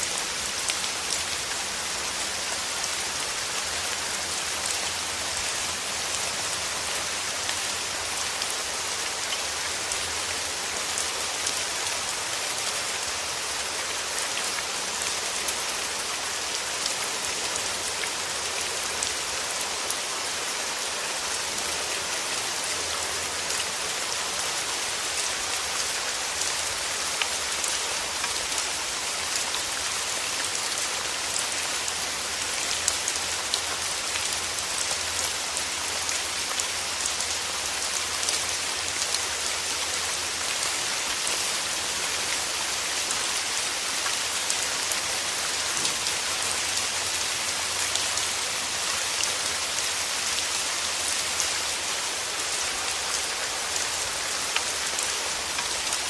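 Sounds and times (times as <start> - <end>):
steady rain: 0.0 - 56.0
raindrops tapping on a surface: 45.7 - 46.1.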